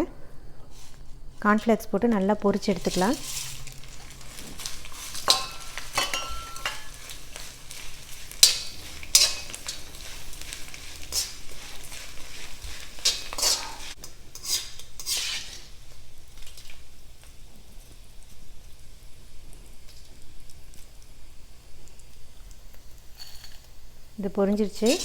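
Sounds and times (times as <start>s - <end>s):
food sizzling in hot oil: 0.7s - 25.0s
utensil scraping a pan: 2.5s - 15.8s.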